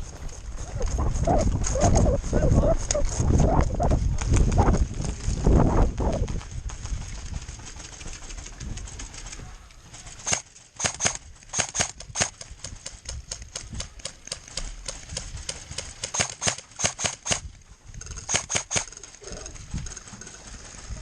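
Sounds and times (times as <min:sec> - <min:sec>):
airsoft guns firing: 0:10.2 - 0:17.4, 0:18.3 - 0:18.9.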